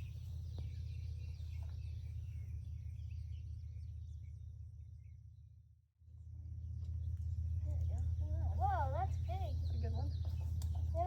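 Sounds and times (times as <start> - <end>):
small bird chirps: 0.0 - 5.2
steady low rumble: 0.0 - 11.0.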